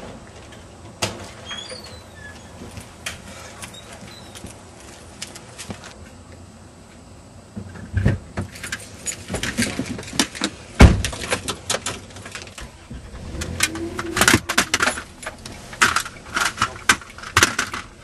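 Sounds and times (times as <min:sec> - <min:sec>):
handling clicks and clatters: 0:08.4 - 0:18.0.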